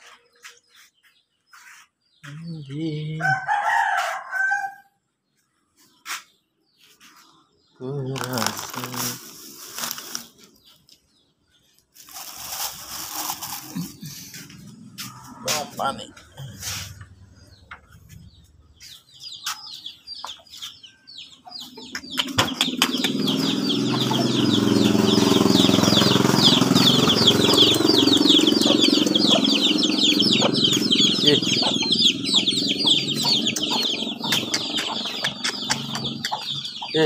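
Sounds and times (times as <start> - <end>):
chicks peeping: 0.0 - 4.6, 5.3 - 37.0
rustling and flapping wings: 8.4 - 10.6, 12.0 - 14.1.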